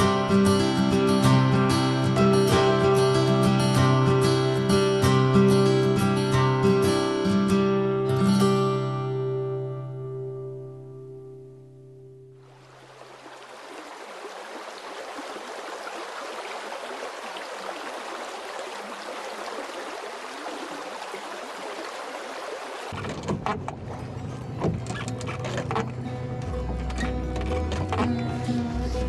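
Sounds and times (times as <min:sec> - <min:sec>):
river water rushing: 0:12.4 - 0:23.1.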